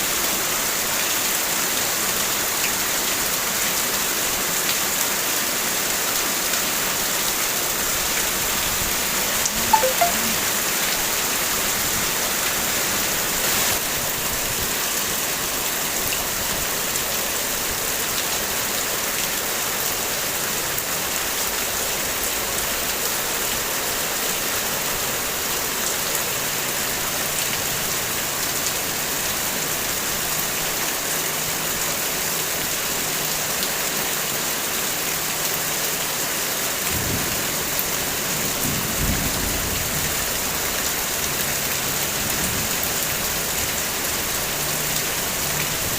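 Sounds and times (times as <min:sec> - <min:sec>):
heavy rain on car body: 0:11.0 - 0:45.9.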